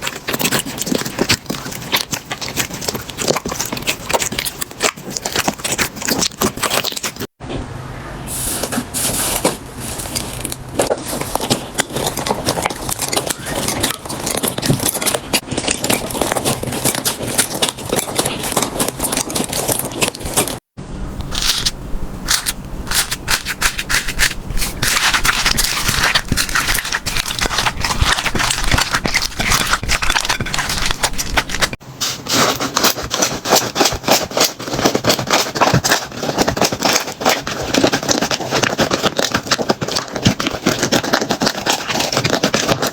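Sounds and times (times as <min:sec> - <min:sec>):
slime crackling and popping: 0:21.2 - 0:42.9.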